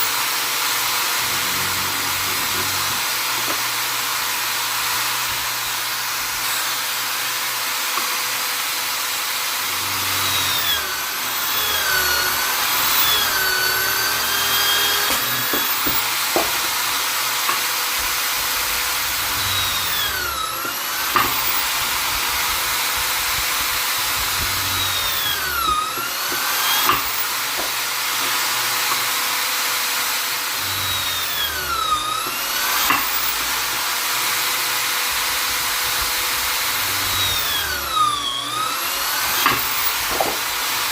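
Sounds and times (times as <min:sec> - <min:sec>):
electric drill motor whining: 0:00.0 - 0:40.9.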